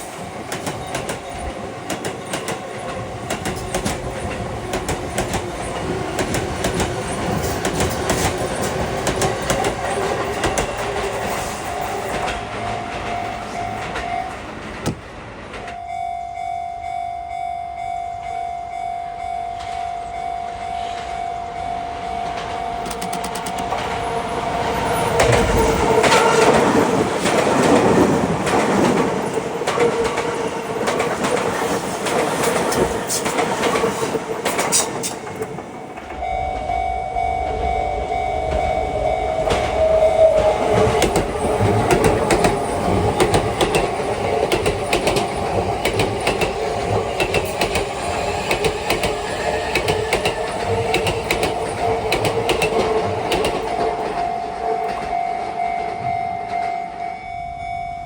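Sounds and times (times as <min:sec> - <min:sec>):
train clattering over rail joints: 0:00.0 - 0:15.8, 0:21.8 - 0:36.8, 0:37.4 - 0:57.0
train deep rumble: 0:00.0 - 0:15.8, 0:19.1 - 0:58.0
level crossing bell ringing: 0:11.5 - 0:14.6, 0:15.7 - 0:26.4, 0:35.8 - 0:41.5, 0:51.5 - 0:58.0.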